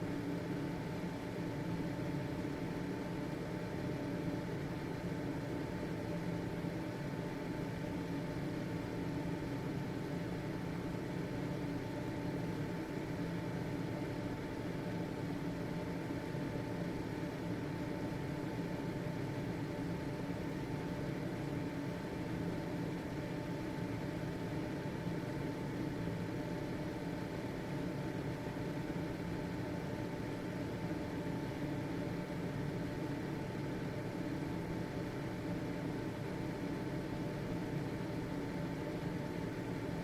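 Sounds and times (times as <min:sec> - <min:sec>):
ventilation fan running: 0:00.0 - 0:40.0.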